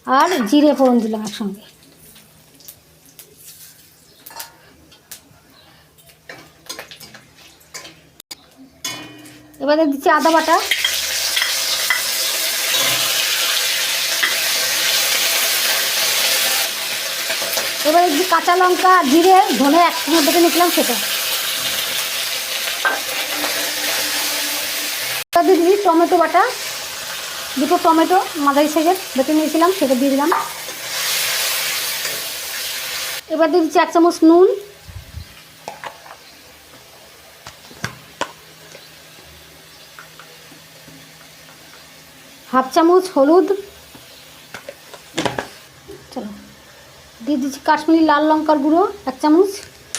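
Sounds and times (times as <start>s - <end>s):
spoon clinking against pan: 8.8s - 9.6s
paste sizzling in hot oil: 10.2s - 33.2s
frying sauce hissing: 10.2s - 33.3s.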